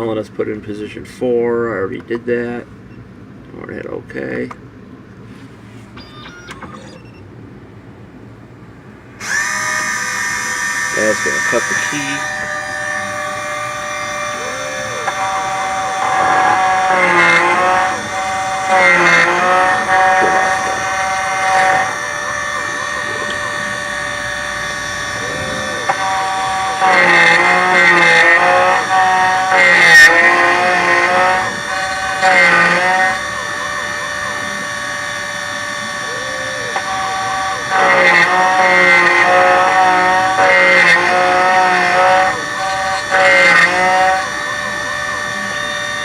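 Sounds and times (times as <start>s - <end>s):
key machine cutter motor whining: 6.0s - 7.2s, 9.1s - 46.0s.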